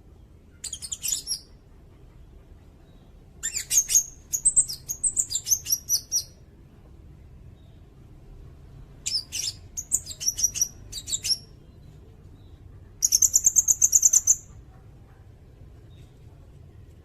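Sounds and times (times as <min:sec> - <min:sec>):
bird chirping and trilling: 0:00.5 - 0:01.5, 0:03.4 - 0:06.4, 0:09.0 - 0:14.6.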